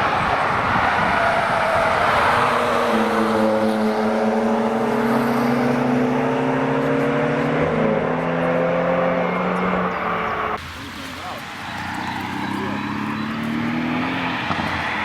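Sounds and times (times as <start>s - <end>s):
car engine running hard: 0.0s - 15.0s.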